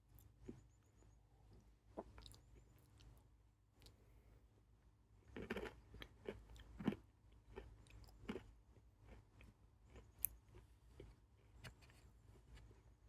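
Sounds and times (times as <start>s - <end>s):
close chewing with crunches: 1.5s - 4.0s, 5.2s - 13.0s.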